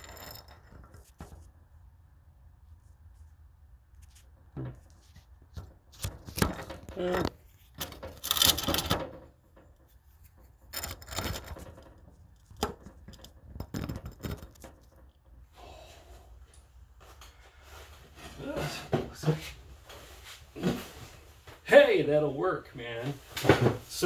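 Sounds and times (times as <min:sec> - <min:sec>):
handling rustling and scraping: 0:02.5 - 0:15.4, 0:16.4 - 0:21.6, 0:23.0 - 0:24.0.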